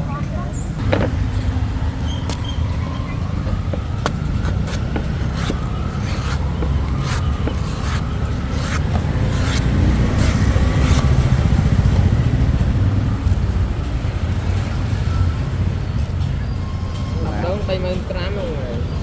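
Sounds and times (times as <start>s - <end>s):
road traffic rumble: 0.0s - 19.0s
machete chopping coconuts: 2.2s - 11.5s.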